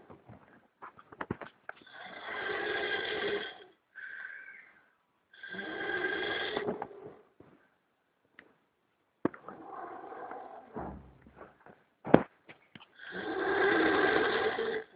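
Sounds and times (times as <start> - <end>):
turtle snoring: 1.8 - 4.6, 5.4 - 7.2, 9.5 - 10.8, 13.0 - 14.9.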